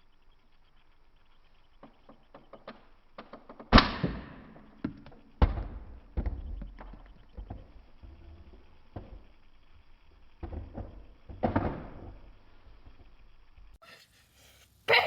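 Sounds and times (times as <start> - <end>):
knocks and thuds: 3.7 - 8.2, 10.4 - 12.2.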